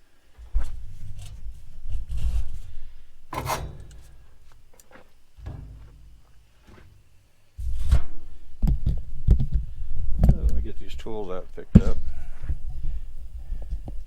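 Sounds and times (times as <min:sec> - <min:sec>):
metal parts scraping: 0:02.1 - 0:06.4.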